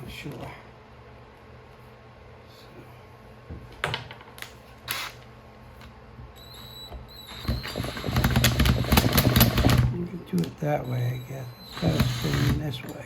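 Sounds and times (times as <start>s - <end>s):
loud mechanical noise: 7.3s - 13.0s.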